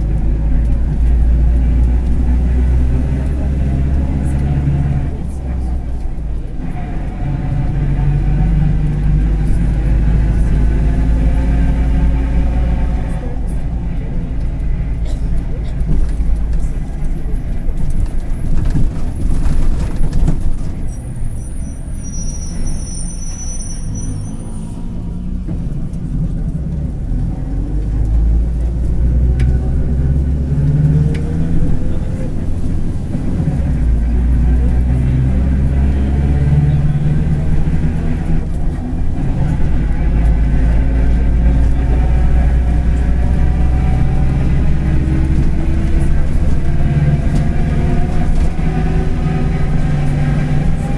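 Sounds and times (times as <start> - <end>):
bus diesel engine rumble: 0.0 - 50.9
high-pitched squeal: 20.8 - 25.1.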